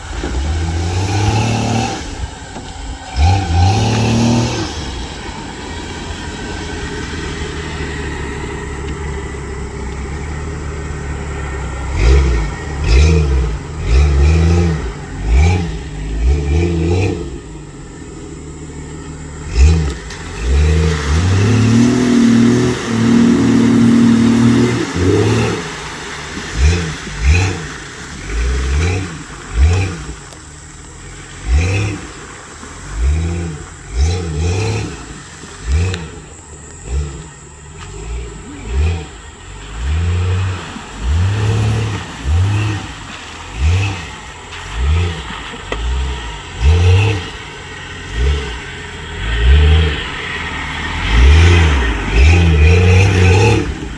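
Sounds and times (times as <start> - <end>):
off-road vehicle engine revving: 0.0 - 53.9.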